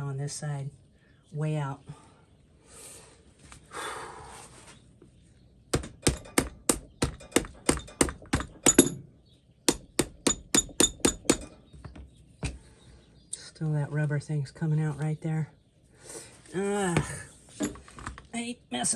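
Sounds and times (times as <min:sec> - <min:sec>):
rubber mallet tapping metal: 0:05.8 - 0:09.0, 0:09.7 - 0:11.6.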